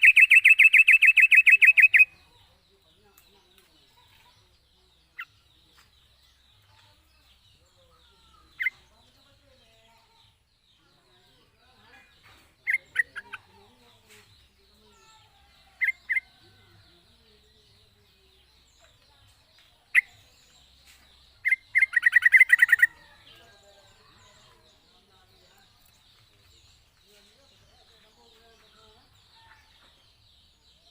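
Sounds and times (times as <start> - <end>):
bird calls: 0.0 - 2.5, 18.3 - 30.9.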